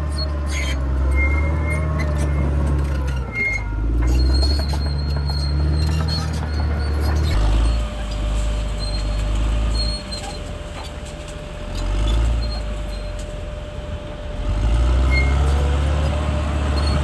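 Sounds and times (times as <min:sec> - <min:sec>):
bulldozer diesel engine: 0:00.0 - 0:17.0.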